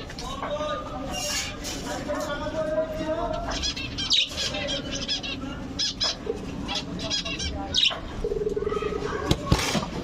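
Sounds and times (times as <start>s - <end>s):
birds chirping: 3.2s - 9.3s.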